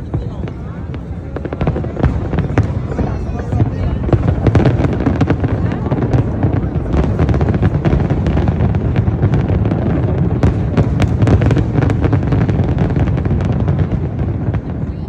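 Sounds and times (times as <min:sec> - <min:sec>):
fireworks booming: 0:00.0 - 0:15.0
fireworks cracking: 0:00.0 - 0:15.0.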